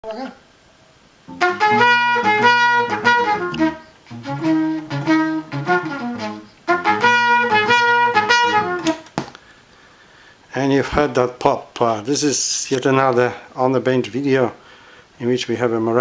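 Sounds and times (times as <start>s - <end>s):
music from cd player: 1.3s - 9.0s.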